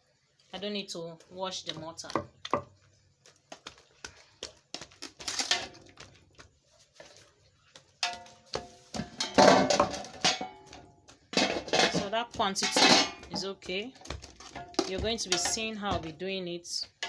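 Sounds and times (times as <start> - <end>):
kitchen utensils knocking and clinking: 5.2 - 6.0, 8.0 - 17.0
pots clattering and ringing: 8.0 - 13.5, 14.4 - 15.8.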